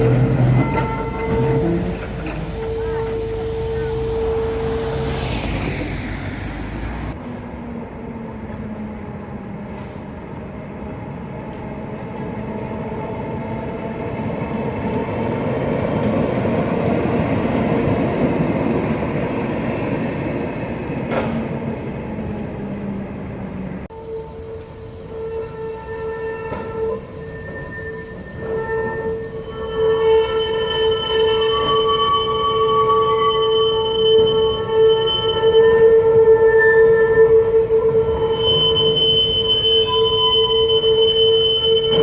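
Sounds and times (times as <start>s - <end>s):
tram wheels squealing on rails: 0.0s - 7.1s, 23.9s - 42.0s
tram car rumble: 0.0s - 42.0s.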